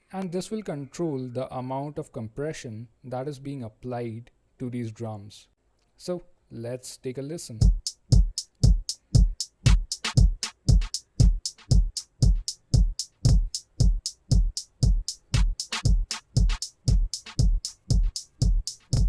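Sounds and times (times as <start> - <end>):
compressed drum loop: 7.6 - 19.0
hi-hat hits: 7.6 - 19.0
kick drum: 7.6 - 19.0.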